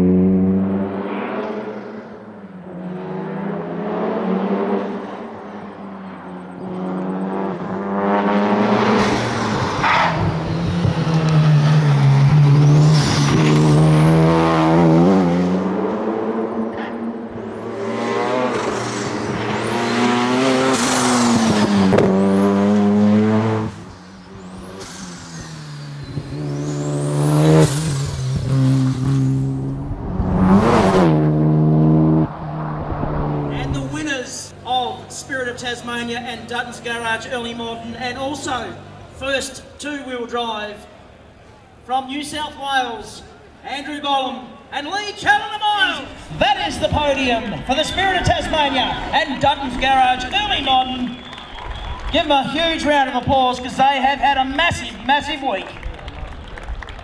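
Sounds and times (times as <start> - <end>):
racing car engine revving hard: 0.0 - 5.4, 6.7 - 34.0.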